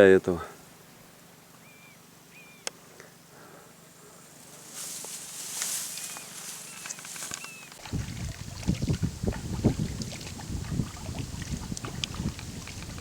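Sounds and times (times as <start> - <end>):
wind buffeting microphone: 7.8 - 13.0.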